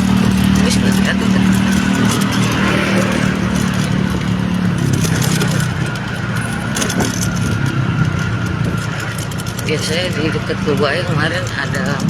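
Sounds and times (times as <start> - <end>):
road and wind noise: 0.0 - 12.0
vehicle engine humming: 0.0 - 12.0.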